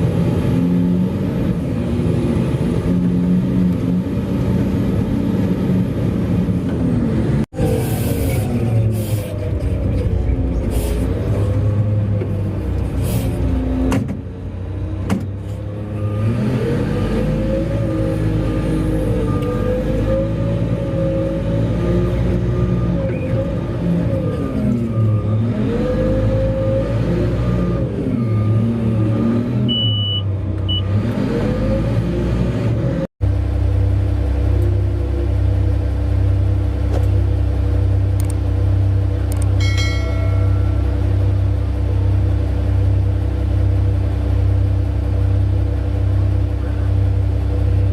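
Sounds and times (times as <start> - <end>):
heavy machinery diesel rumble: 0.0 - 16.2, 33.2 - 47.9.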